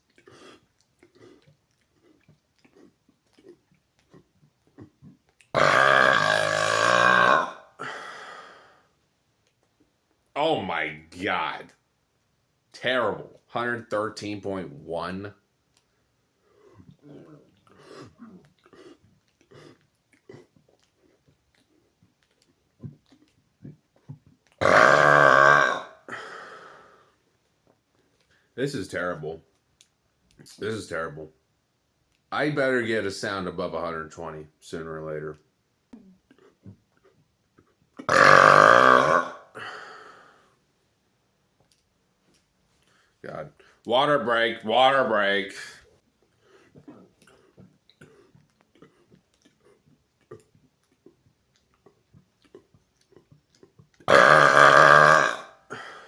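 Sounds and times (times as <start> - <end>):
man swallowing water: 0.0 - 7.9, 22.2 - 26.2, 36.0 - 39.7, 46.8 - 55.9
faint gulps: 0.0 - 8.0, 16.4 - 26.2, 36.0 - 39.7, 46.2 - 56.0
man burping loudly: 5.6 - 8.1, 24.6 - 26.3, 38.0 - 39.8, 54.1 - 55.9.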